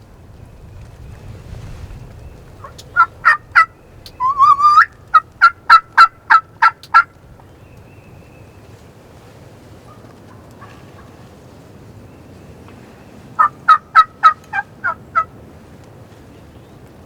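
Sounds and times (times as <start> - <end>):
turkey yelping: 2.6 - 7.1, 13.4 - 15.3.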